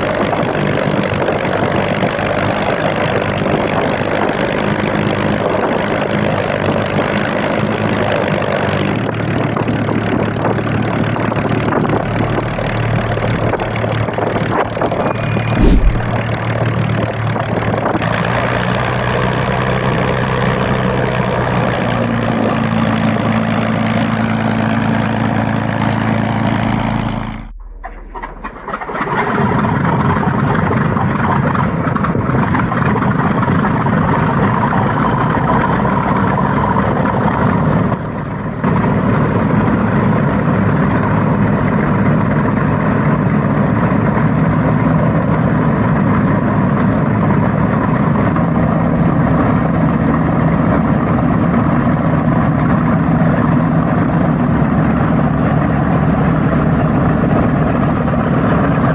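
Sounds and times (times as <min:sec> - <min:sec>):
aircraft engines running: 0:23.9 - 0:58.9.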